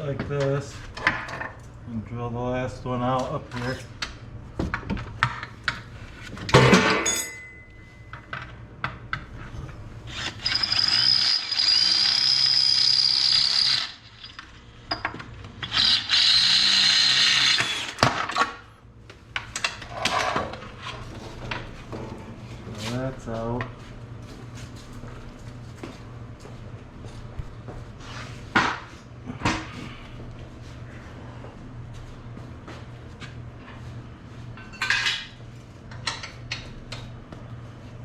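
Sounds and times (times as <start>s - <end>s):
power drill whining: 10.1s - 14.4s, 15.6s - 18.0s.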